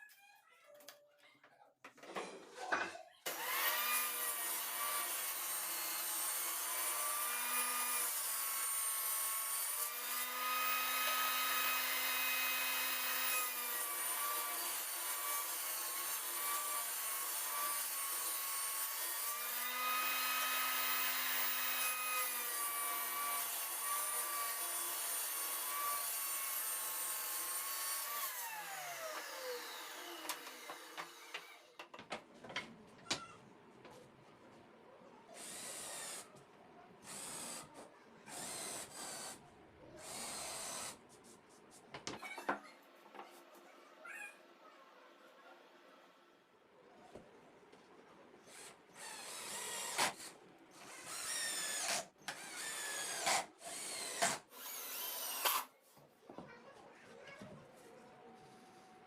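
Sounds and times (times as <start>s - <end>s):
electric saw cutting wood: 3.3s - 31.6s.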